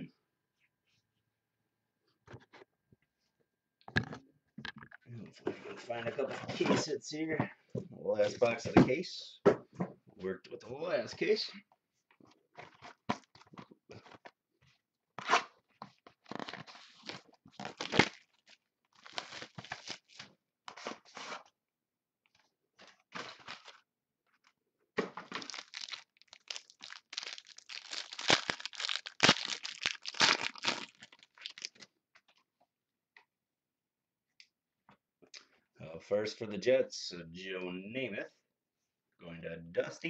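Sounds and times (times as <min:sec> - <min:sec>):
packaging ripping and crumpling: 0:16.2 - 0:20.2, 0:23.2 - 0:23.8, 0:25.3 - 0:31.8.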